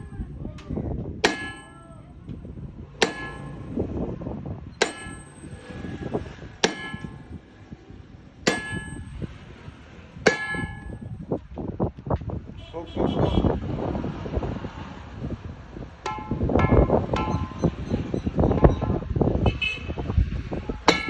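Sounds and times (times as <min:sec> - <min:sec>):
hammer striking metal: 0:01.2 - 0:07.7, 0:08.4 - 0:11.2, 0:16.0 - 0:19.4, 0:20.4 - 0:21.0.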